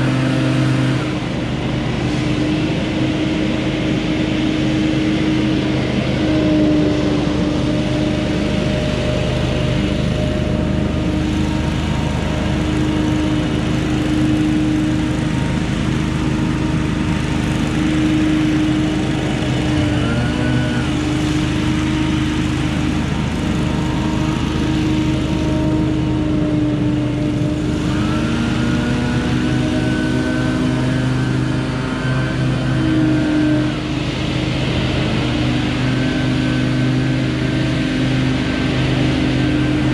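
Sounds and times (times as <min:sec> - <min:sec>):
leaf blower engine running: 0:00.0 - 0:39.9.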